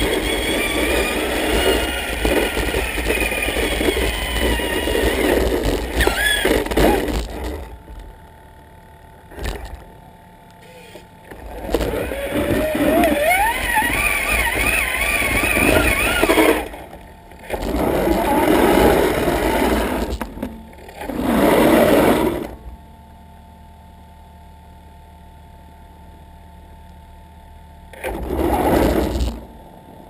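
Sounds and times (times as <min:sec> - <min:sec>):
toy truck electric motor whirring: 0:00.0 - 0:07.6, 0:10.6 - 0:22.6, 0:28.0 - 0:29.5.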